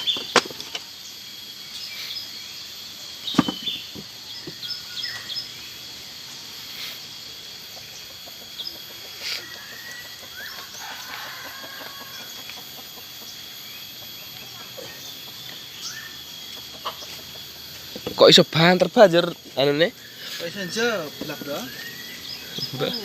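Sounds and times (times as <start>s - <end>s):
birds chirping and calling: 0.0s - 23.0s
sharp knocks: 3.3s - 4.0s
chickens clucking: 7.7s - 13.4s, 16.4s - 17.5s.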